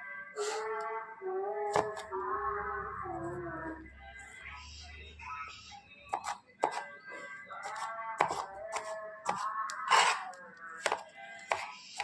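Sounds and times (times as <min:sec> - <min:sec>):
background music held notes: 0:00.0 - 0:05.4.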